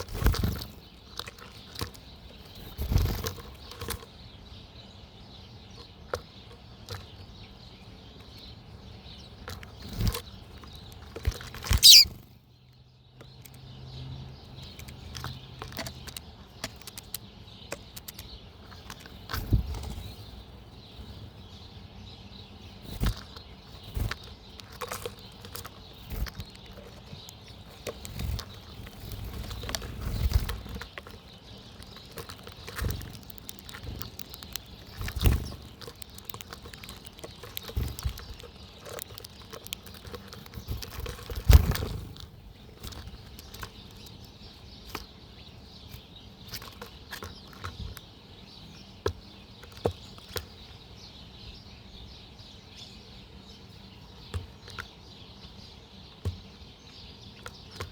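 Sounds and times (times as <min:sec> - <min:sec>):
birds chirping: 0:00.0 - 0:57.9
small clicks: 0:09.5 - 0:12.1, 0:14.6 - 0:19.5, 0:22.9 - 0:44.2
bird wings fluttering: 0:34.9 - 0:36.1.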